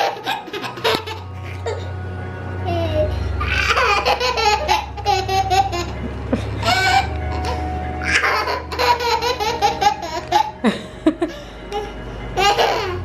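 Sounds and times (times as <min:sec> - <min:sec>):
toddler laughing: 0:00.0 - 0:01.9, 0:02.7 - 0:13.0.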